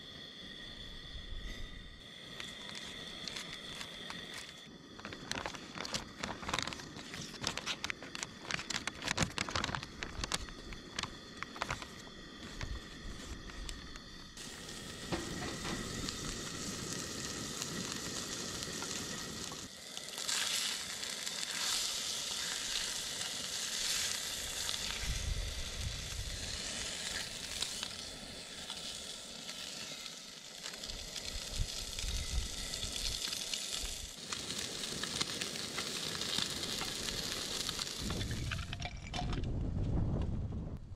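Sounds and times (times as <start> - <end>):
food sizzling in a pan: 14.0 - 38.5.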